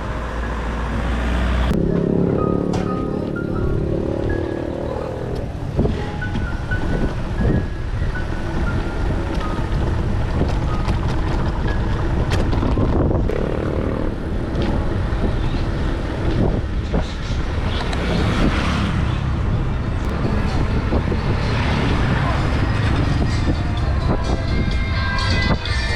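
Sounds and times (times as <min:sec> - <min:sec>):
wind rumbling on microphone: 0:05.2 - 0:25.9.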